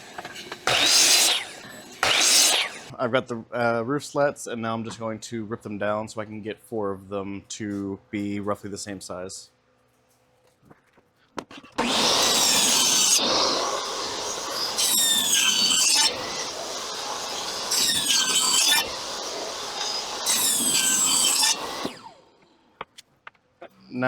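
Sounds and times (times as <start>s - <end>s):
power saw cutting wood: 0.0s - 2.9s, 11.7s - 22.6s.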